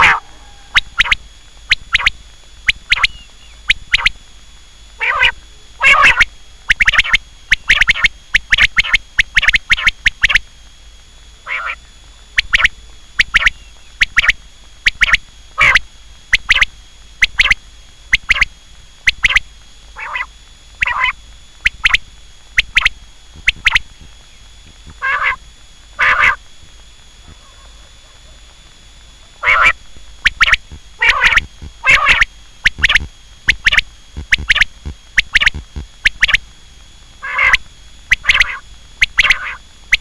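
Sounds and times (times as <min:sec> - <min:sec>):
quail calling: 0:00.0 - 0:04.2, 0:05.0 - 0:10.4, 0:11.4 - 0:11.8, 0:12.4 - 0:15.8, 0:20.0 - 0:22.0, 0:22.6 - 0:23.9, 0:24.9 - 0:25.4, 0:26.0 - 0:26.4, 0:27.2 - 0:28.4, 0:29.4 - 0:36.4, 0:37.2 - 0:40.0
faint high whine: 0:00.0 - 0:40.0.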